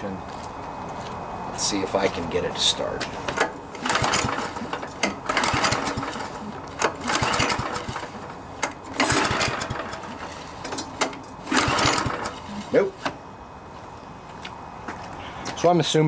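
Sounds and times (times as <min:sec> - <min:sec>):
pull-starter cranking engine: 0:03.2 - 0:13.2.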